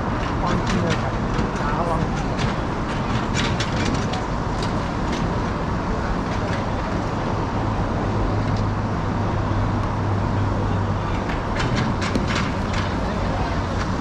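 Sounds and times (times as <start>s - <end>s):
road traffic rumble and hiss: 0.0s - 14.0s.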